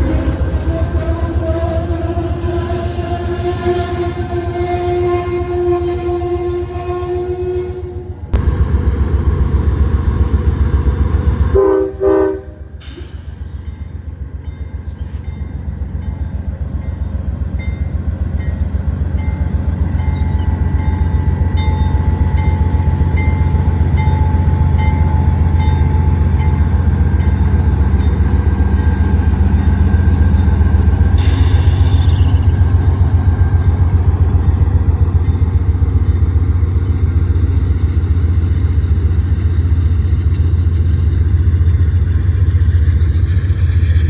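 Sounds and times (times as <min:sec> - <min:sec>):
train horn blast: 0:00.0 - 0:08.2, 0:11.5 - 0:12.8
train locomotive rumbling past: 0:00.0 - 0:44.0.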